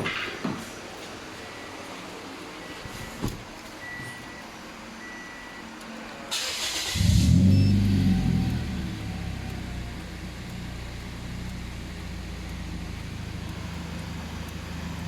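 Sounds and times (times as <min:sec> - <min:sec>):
car engine starting and idling: 0:06.3 - 0:15.0
short high beeps: 0:07.5 - 0:07.9.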